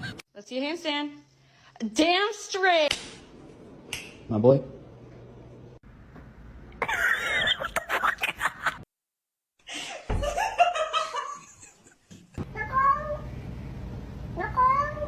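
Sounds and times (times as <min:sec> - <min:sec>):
person laughing: 0:06.8 - 0:08.8.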